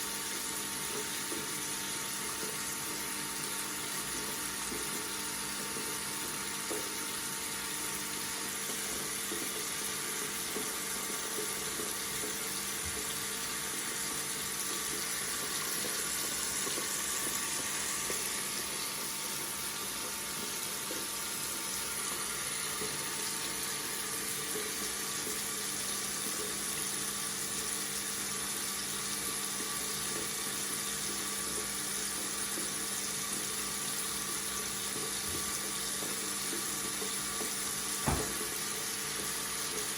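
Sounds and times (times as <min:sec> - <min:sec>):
tap running into a sink: 0:00.3 - 0:26.8, 0:34.5 - 0:39.9.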